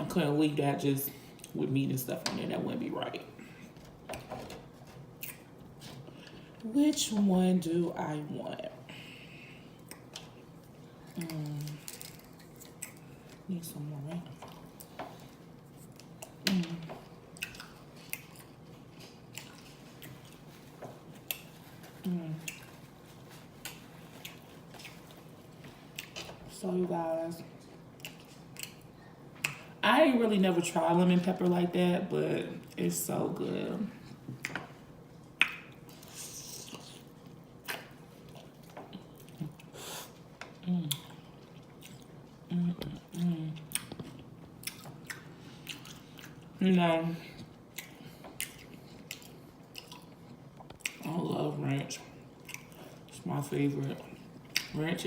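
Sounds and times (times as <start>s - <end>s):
wet chewing and mouth smacks: 14.4s - 21.6s, 22.4s - 26.4s, 27.8s - 29.7s, 35.2s - 46.6s, 47.5s - 51.0s, 52.4s - 53.1s.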